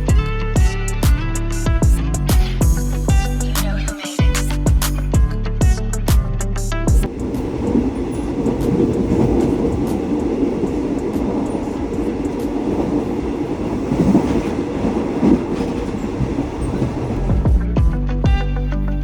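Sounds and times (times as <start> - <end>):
train rolling on rails: 7.0 - 17.6.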